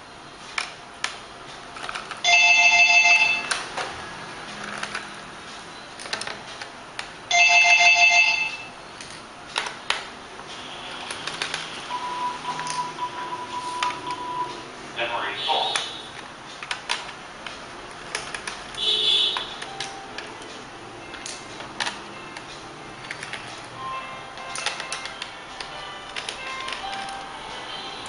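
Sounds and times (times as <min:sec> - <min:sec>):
electronic ringtone: 0:02.2 - 0:03.6, 0:07.3 - 0:08.8, 0:11.8 - 0:14.7.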